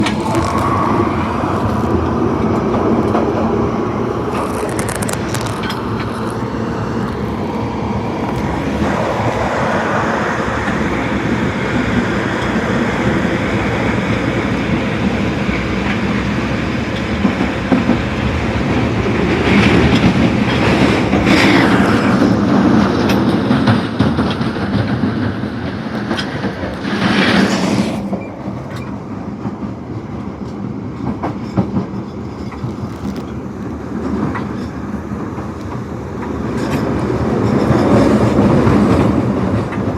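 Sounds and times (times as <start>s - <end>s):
subway car running on rails: 0.0s - 39.9s.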